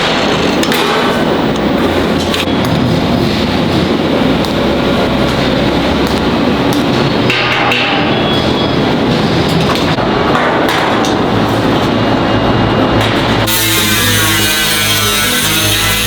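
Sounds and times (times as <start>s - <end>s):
grinding on steel: 13.2s - 16.0s.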